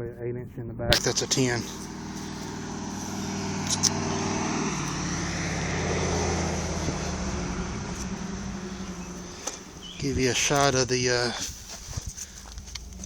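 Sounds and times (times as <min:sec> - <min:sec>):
passing engine drone: 0:00.0 - 0:11.6.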